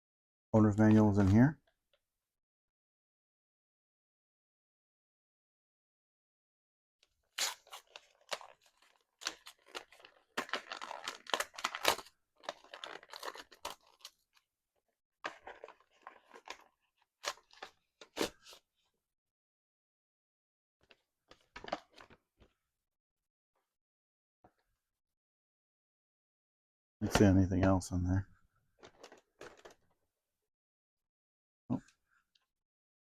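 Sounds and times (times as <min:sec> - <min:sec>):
packaging rustling and crackling: 0:07.4 - 0:14.4, 0:15.3 - 0:18.4, 0:28.8 - 0:29.8.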